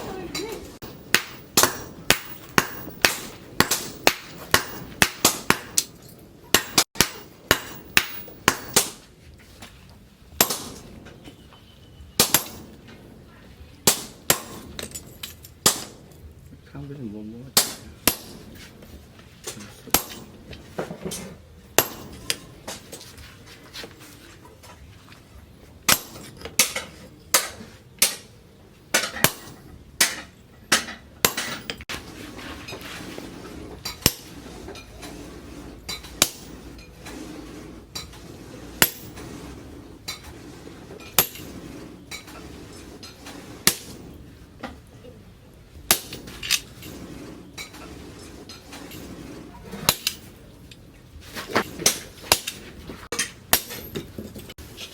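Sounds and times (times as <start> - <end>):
hammer striking steel on anvil: 0.8 - 9.0, 10.4 - 10.8, 12.2 - 12.8, 13.9 - 14.9, 19.9 - 20.4, 21.8 - 22.5, 29.0 - 31.8, 45.9 - 46.3.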